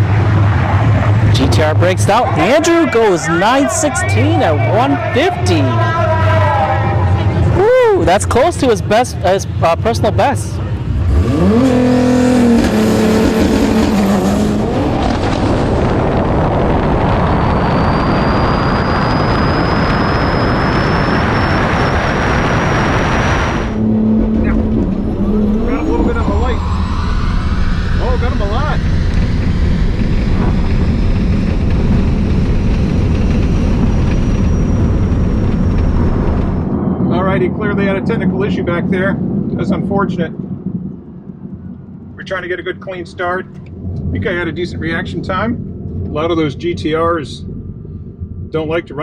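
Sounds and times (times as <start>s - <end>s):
loud steady rushing noise: 0.0s - 49.0s
road and wind roar: 0.0s - 49.0s
car engine revving: 8.2s - 37.4s
faint high whine: 15.8s - 39.2s.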